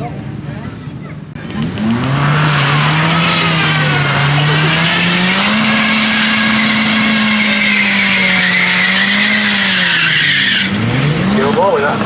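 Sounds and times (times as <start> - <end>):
tyres spinning and squealing: 0.8 - 11.8
car engine revving: 1.2 - 12.0.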